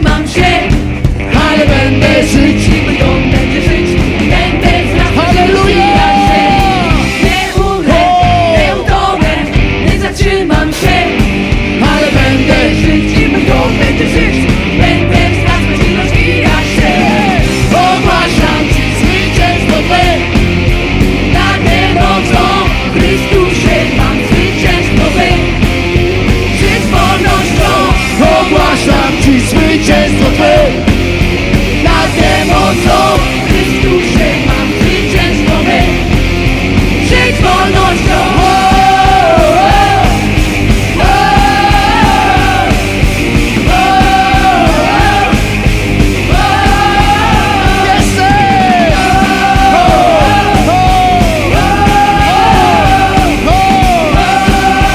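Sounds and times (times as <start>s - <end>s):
band playing rock song: 0.0s - 54.9s
person singing: 1.3s - 11.1s, 46.3s - 54.9s.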